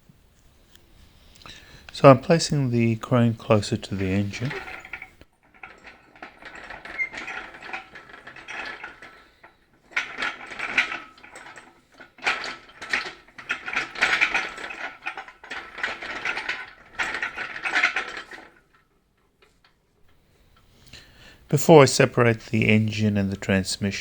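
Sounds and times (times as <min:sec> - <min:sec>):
caster wheels rattling: 0:01.4 - 0:18.8.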